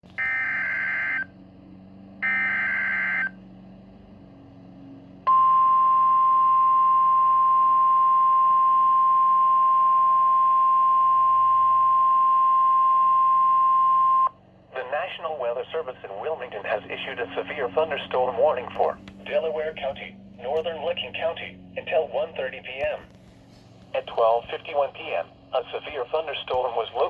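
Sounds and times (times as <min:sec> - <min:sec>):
steady high alarm tone: 0:00.2 - 0:01.3, 0:02.2 - 0:03.4, 0:05.3 - 0:14.3.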